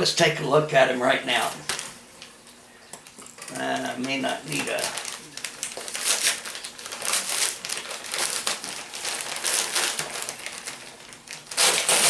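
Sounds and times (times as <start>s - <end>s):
envelope rustling: 3.4s - 12.0s.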